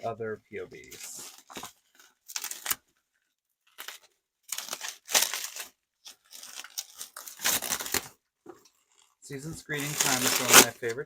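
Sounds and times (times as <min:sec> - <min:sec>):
packaging crinkling and tearing: 0:00.9 - 0:02.9, 0:03.7 - 0:08.1, 0:09.7 - 0:11.0.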